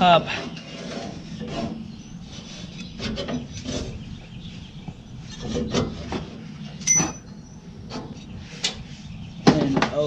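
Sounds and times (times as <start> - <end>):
metallic clink: 6.8 - 7.6.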